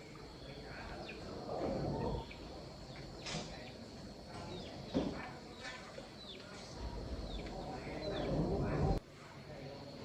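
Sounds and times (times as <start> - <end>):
small birds chirping: 0.0 - 9.0.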